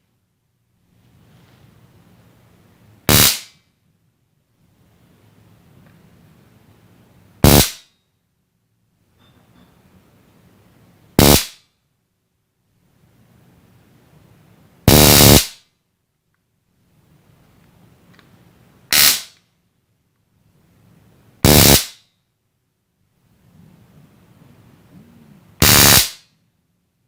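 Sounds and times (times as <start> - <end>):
stun gun crackling: 18.9 - 19.4, 25.6 - 26.3.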